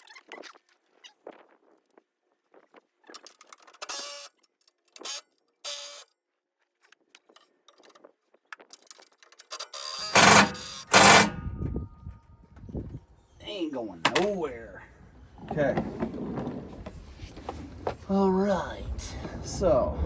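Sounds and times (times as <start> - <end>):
hand tool scraping strokes: 9.6 - 11.4.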